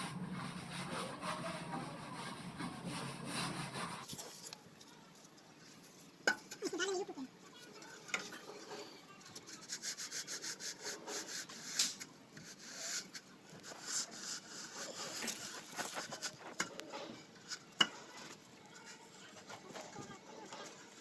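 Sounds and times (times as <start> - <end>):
plastering tool scraping on plaster: 0.0 - 4.5.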